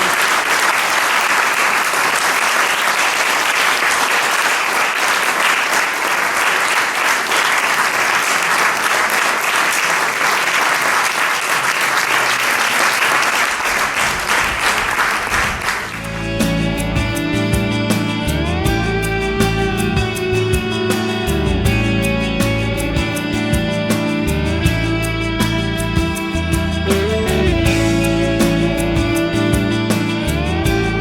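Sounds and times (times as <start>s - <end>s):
audience applauding: 0.0s - 17.3s.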